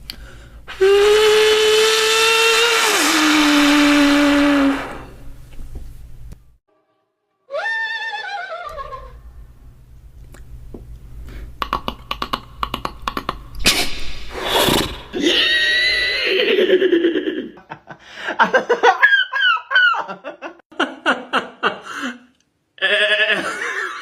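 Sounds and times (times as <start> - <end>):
noisy mouth bursts: 0.1 - 5.3, 11.2 - 15.2
mouth clicks: 10.2 - 15.1.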